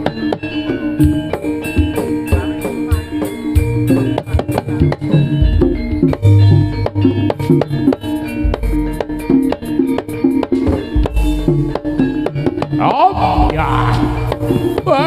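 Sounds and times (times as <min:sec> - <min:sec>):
bronze metallophone notes: 0:00.0 - 0:15.0
kendang drum strokes: 0:04.1 - 0:14.9.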